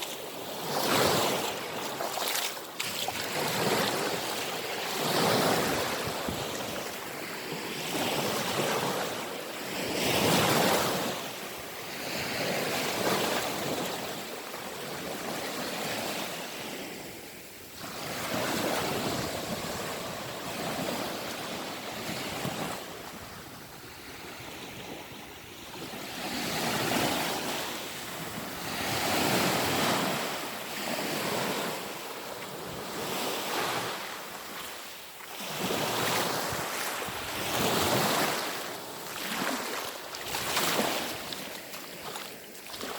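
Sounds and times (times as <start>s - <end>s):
waves breaking on shore: 0.0s - 42.9s
wind on microphone: 4.9s - 7.1s.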